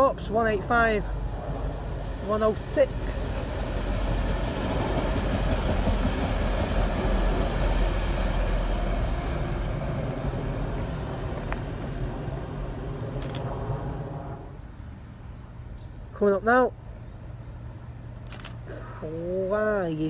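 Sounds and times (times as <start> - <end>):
train wheels on rails rumbling: 0.0 - 14.6
diesel train running past: 0.0 - 20.0.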